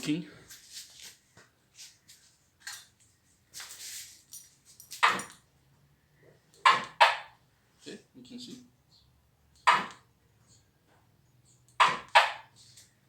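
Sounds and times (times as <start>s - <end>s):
hard parts clicking and clattering: 3.7s - 5.5s.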